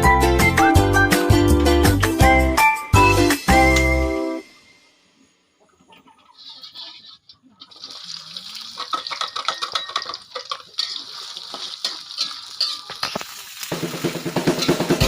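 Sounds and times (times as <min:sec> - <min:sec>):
water splashing by hand: 0:07.6 - 0:14.6.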